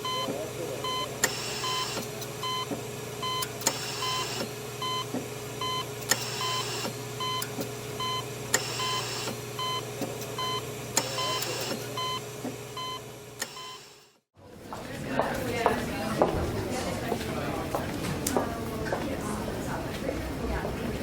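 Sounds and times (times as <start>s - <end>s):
short electronic beeps: 0.0s - 12.2s, 12.8s - 14.0s.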